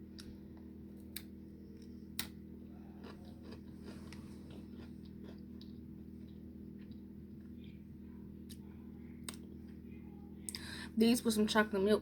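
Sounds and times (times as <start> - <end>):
biscuit being bitten and chewed: 0.0 - 7.8.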